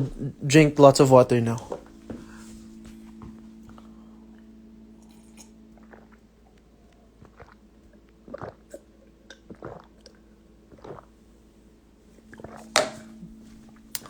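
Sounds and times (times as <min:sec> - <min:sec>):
low steady hum: 0:00.0 - 0:14.0
soft mouth sounds: 0:03.7 - 0:11.2.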